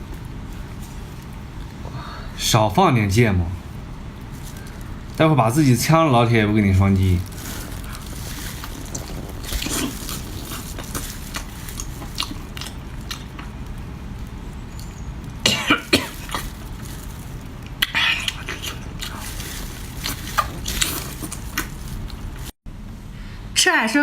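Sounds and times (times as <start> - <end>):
woman coughing: 15.5 - 16.4.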